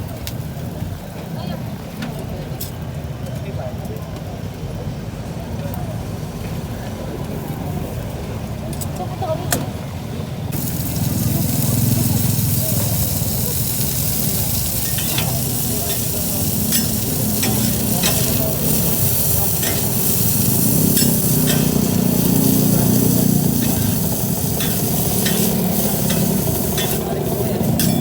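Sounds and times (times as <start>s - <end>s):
food sizzling in hot oil: 10.6s - 28.0s
metal utensil scraping a pan: 14.8s - 28.0s.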